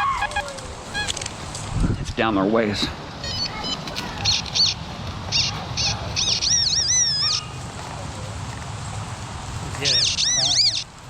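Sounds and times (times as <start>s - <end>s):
metal detector beeps: 3.2s - 4.8s, 9.9s - 10.8s.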